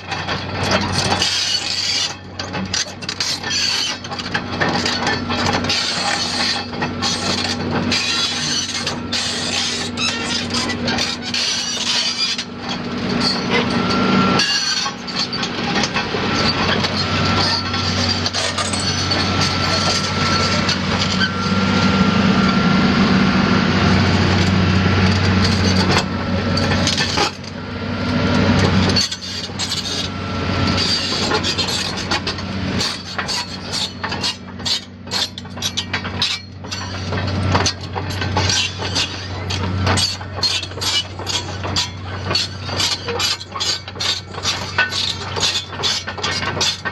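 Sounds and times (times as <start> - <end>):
excavator engine hum: 0.0 - 46.9
thin whine: 8.3 - 34.1.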